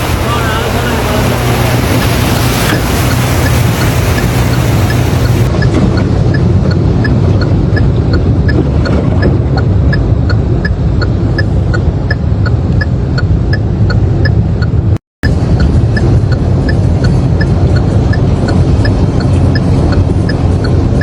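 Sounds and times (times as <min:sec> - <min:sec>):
floodwater rushing: 0:00.0 - 0:12.8
even ticking beat: 0:00.0 - 0:21.0.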